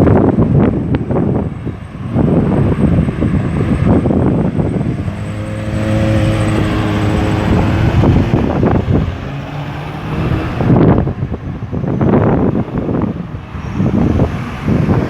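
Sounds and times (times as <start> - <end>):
traffic rumble: 0.0 - 15.0
vehicle engine passing close by: 0.1 - 15.0.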